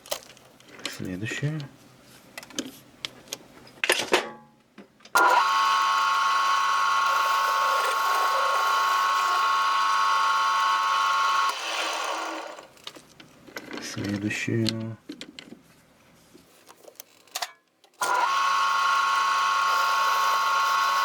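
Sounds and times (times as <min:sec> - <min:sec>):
small lathe whining: 0:05.2 - 0:12.8, 0:18.0 - 0:21.0.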